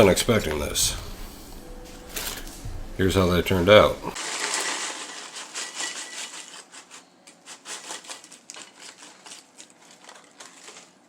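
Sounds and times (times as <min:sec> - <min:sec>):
snack bag crinkling and rustling: 0:01.5 - 0:02.7, 0:04.2 - 0:11.0.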